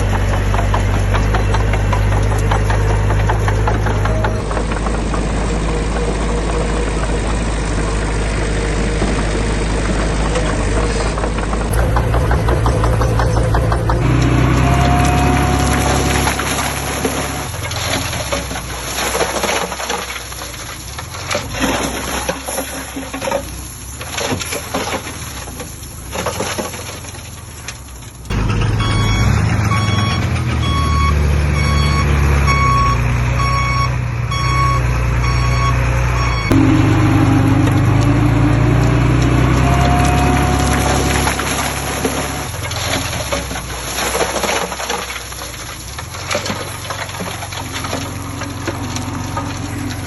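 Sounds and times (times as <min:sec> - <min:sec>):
diesel machinery rattling: 0:00.0 - 0:50.0
steady engine: 0:00.0 - 0:50.0
reversing alarm beeping: 0:11.7 - 0:17.6, 0:28.3 - 0:42.5.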